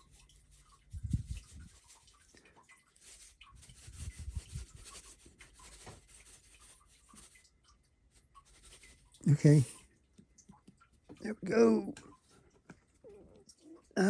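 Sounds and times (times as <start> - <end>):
rubbing and scraping handling noise: 0.0 - 9.8.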